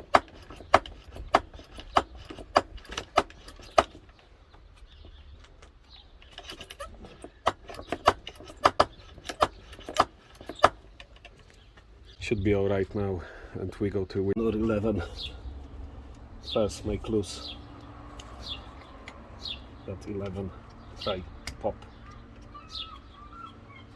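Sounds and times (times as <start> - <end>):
hand pump metallic clicks: 0.0 - 11.9, 17.2 - 23.4.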